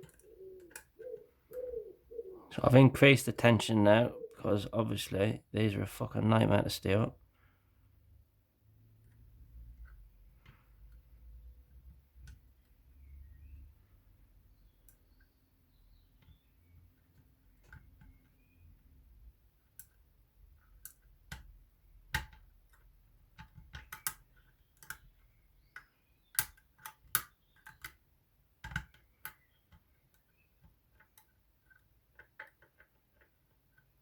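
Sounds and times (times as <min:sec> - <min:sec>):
lock-picking tools clicking: 0:19.7 - 0:34.0.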